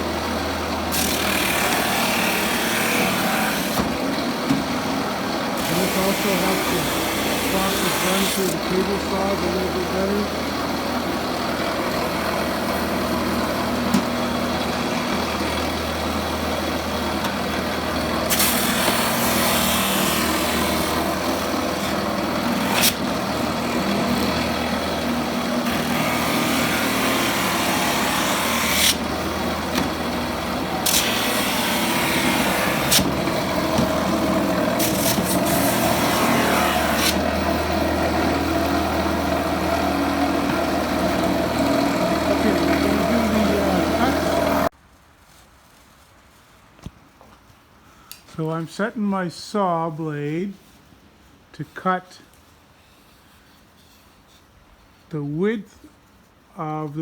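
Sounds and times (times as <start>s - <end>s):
wire wheel scrubbing paint: 5.5s - 10.4s, 11.0s - 44.7s.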